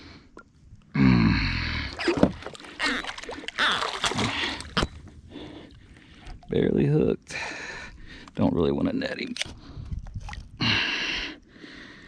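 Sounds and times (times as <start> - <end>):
fish splashing and thrashing: 1.9 - 5.0, 9.3 - 10.6.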